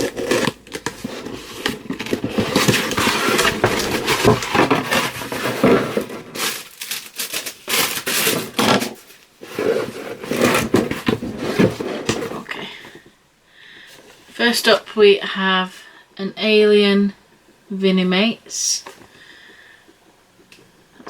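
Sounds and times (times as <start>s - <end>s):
cardboard box rustling and crinkling: 0.0s - 12.7s.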